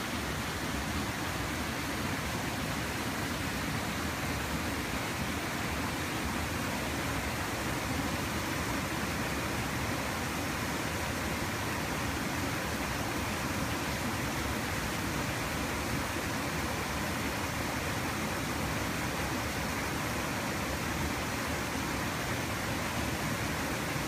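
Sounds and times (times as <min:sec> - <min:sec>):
stream water flowing: 0:00.0 - 0:24.0.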